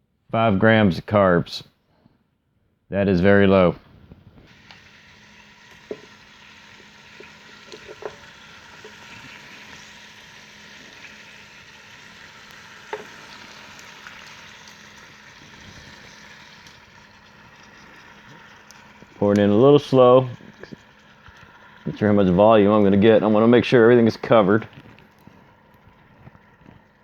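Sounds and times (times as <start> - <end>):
chicken sizzling in a pot: 4.5 - 27.0.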